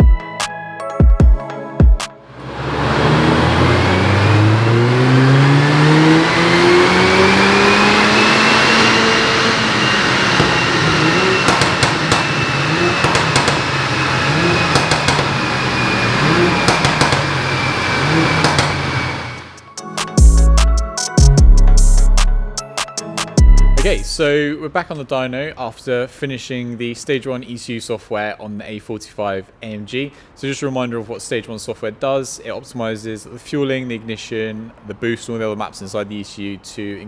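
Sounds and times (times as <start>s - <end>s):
car engine revving at full throttle: 2.3s - 19.7s
thin high whine: 2.4s - 20.5s.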